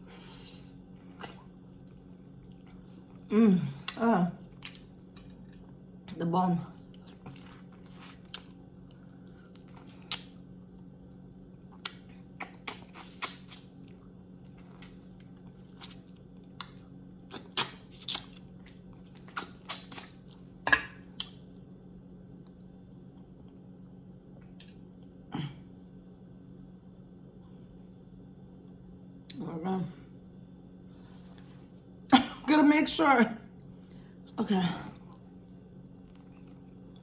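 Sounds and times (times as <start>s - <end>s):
chewing and mouth smacking: 0.2s - 5.8s, 6.8s - 21.6s, 34.9s - 37.0s.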